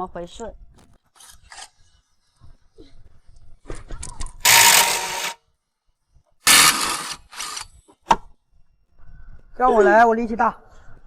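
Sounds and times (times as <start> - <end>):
impact wrench burst: 4.4 - 5.4, 6.4 - 7.7.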